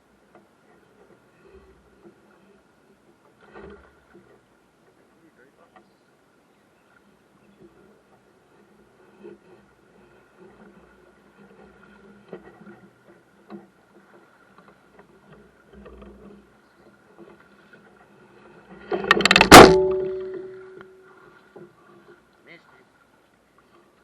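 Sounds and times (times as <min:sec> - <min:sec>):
clatter of knocks: 0:18.7 - 0:20.8
short ringing tone: 0:19.5 - 0:21.1.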